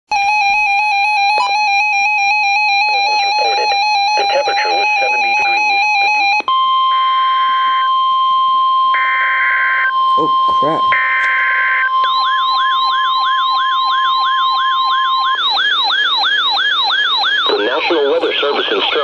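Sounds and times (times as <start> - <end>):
steady high alarm tones: 0.1 - 19.0
warbling electronic alarm: 0.1 - 19.0
faint voice: 2.9 - 5.8, 10.1 - 11.5, 17.5 - 19.0.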